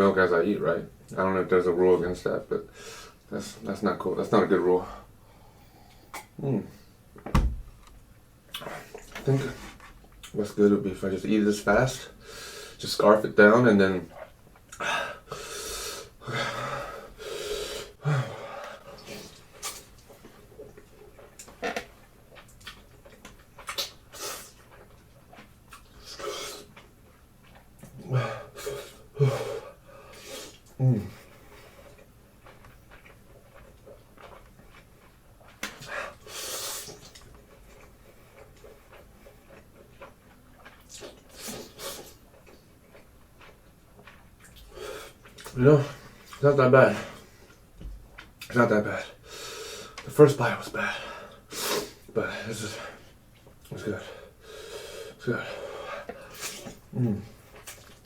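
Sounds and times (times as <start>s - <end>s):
chewing and smacking: 18.9s - 28.0s, 28.7s - 48.8s, 53.0s - 54.0s, 55.9s - 58.0s.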